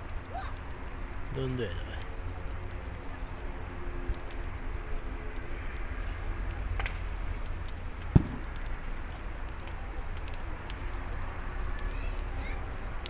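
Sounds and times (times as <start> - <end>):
bonfire crackling: 0.0 - 13.0
low steady rumble: 0.0 - 13.0
sharp pops: 6.7 - 8.8.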